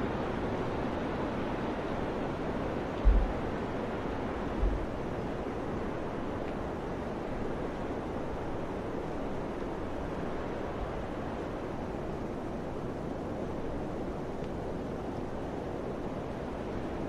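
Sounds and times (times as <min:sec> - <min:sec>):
strong wind blowing: 0:00.0 - 0:17.0
wind buffeting microphone: 0:01.2 - 0:06.3.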